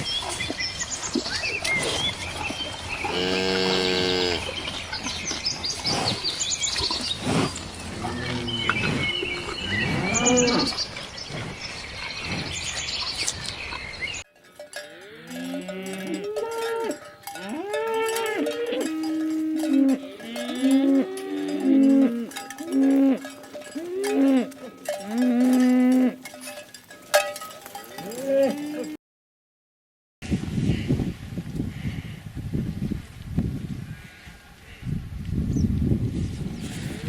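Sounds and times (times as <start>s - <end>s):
cows mooing: 3.1s - 4.5s, 7.4s - 10.8s, 14.9s - 26.3s, 28.0s - 29.0s
cowbells clanking: 6.6s - 11.3s, 12.0s - 29.0s.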